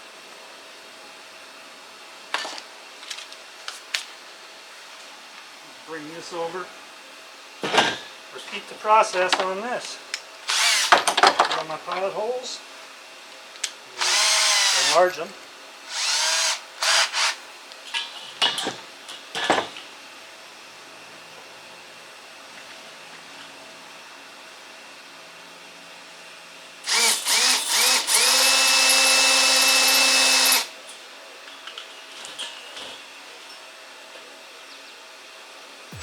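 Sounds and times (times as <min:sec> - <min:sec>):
power drill drilling into metal: 0:10.5 - 0:11.2, 0:14.0 - 0:15.1, 0:15.9 - 0:17.4, 0:26.8 - 0:30.7.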